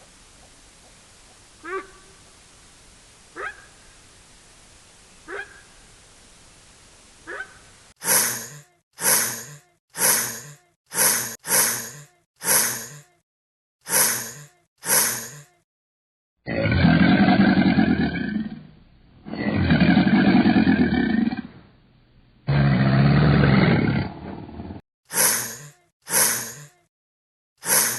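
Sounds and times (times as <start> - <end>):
steady hiss: 0.0 - 7.9
animal breathy blasts: 8.0 - 13.0, 13.9 - 15.4, 27.6 - 27.9.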